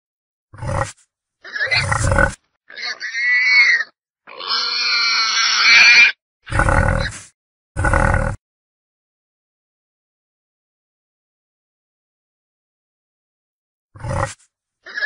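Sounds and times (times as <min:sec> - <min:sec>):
wild boar squealing: 0:00.6 - 0:07.3, 0:14.0 - 0:15.0
wild boar grunting: 0:00.6 - 0:08.4, 0:14.0 - 0:15.0.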